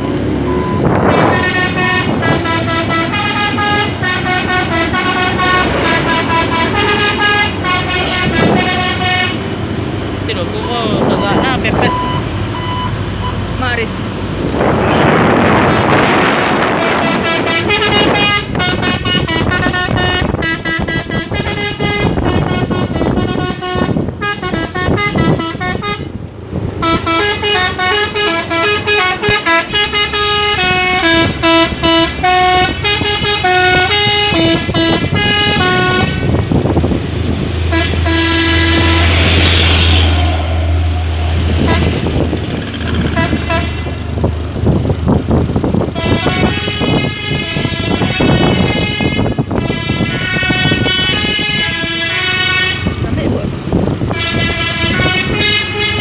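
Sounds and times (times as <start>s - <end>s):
deep truck engine hum: 0.0s - 56.0s
musical air horn playing notes: 1.0s - 9.6s, 14.8s - 26.2s, 26.8s - 36.4s, 37.7s - 42.3s, 43.1s - 44.0s, 46.0s - 53.1s, 54.1s - 56.0s.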